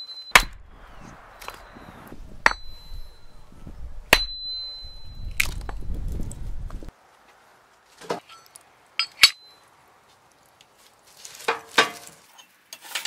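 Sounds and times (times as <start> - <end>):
hatchet splitting firewood: 0.2 - 0.6, 2.4 - 3.1, 4.1 - 6.8
high metallic ring: 2.4 - 3.5, 4.1 - 5.4.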